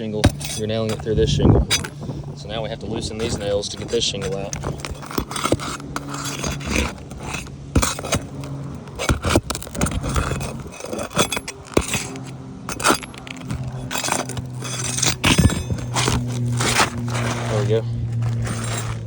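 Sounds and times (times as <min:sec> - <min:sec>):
metal tool scraping roof shingles: 0:00.0 - 0:19.0
steady low hum: 0:00.0 - 0:19.0.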